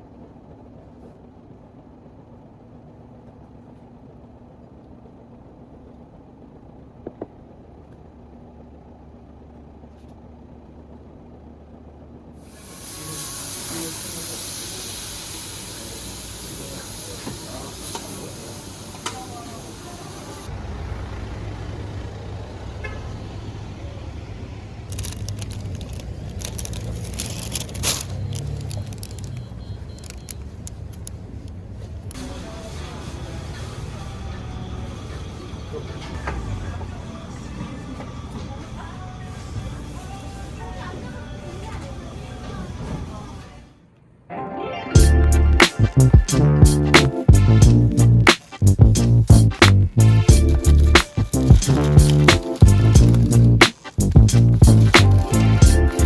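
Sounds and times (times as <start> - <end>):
vehicle rumble: 19.6 - 40.1, 45.0 - 56.0
clicks and crackles: 24.9 - 32.2, 51.0 - 55.5
funky groove music: 45.0 - 56.0.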